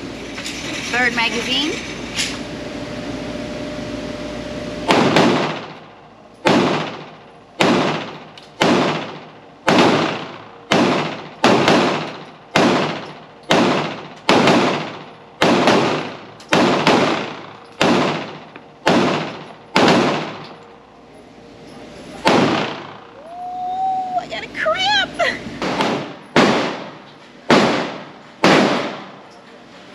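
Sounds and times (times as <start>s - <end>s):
pistol shots with echo: 4.9s - 5.8s, 6.4s - 20.5s, 22.2s - 23.1s, 25.6s - 29.2s.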